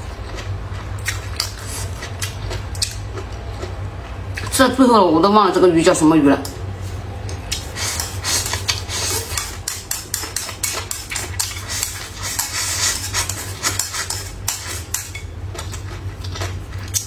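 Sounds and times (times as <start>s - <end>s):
steady low hum: 0.0s - 17.0s
chopsticks tapping bowls: 7.3s - 15.9s.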